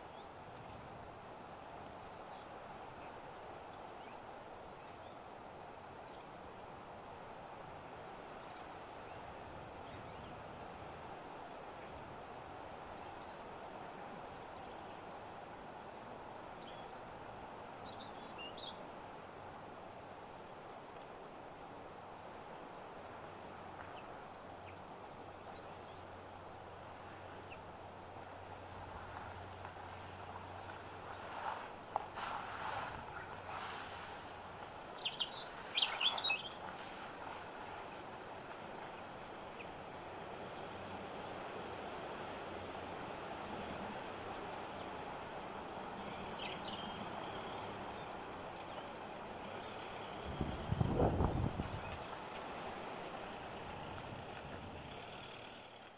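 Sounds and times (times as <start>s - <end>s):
soft hiss: 0.0s - 55.9s
bird chirps: 34.7s - 36.6s.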